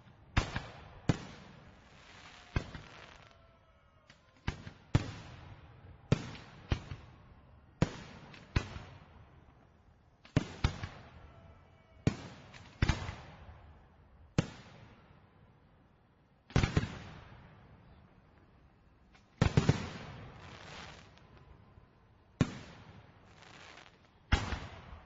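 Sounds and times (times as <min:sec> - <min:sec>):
fireworks bursting with echo: 0:00.0 - 0:03.5, 0:04.1 - 0:13.8, 0:19.2 - 0:25.0.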